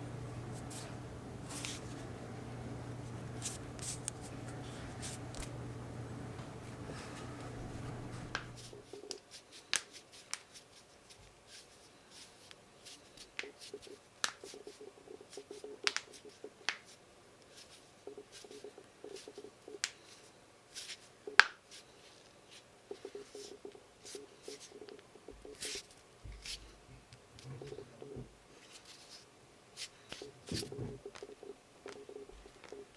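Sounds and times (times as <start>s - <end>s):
low steady hum: 0.0s - 9.0s, 22.9s - 25.7s, 26.3s - 28.5s.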